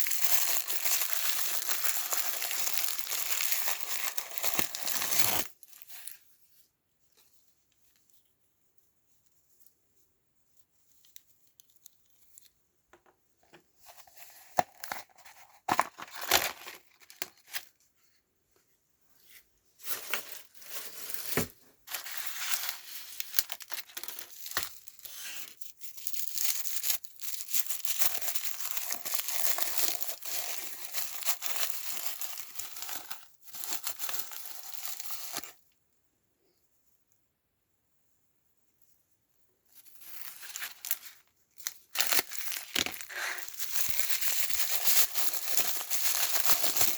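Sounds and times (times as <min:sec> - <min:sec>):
plastic packaging tearing: 0:00.0 - 0:06.0, 0:14.0 - 0:17.7, 0:19.9 - 0:35.5, 0:40.0 - 0:46.9
plastic packaging crinkling: 0:00.0 - 0:06.2, 0:13.8 - 0:17.7, 0:19.8 - 0:35.6, 0:39.8 - 0:46.9.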